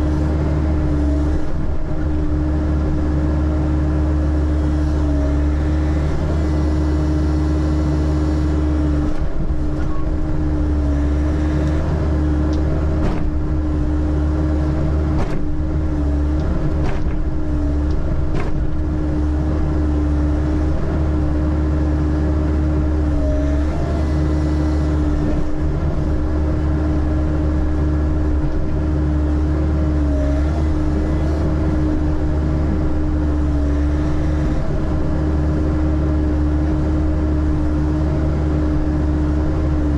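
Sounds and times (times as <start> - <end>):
digger diesel engine running: 0.0 - 39.9.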